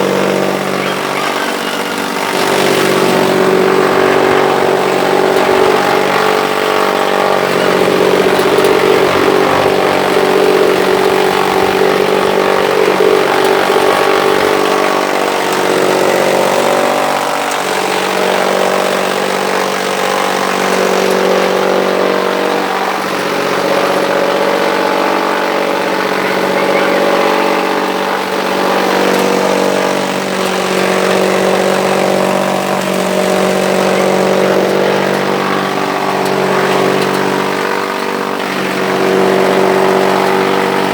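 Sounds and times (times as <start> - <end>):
chaff cutter machine hum: 0.0 - 40.9.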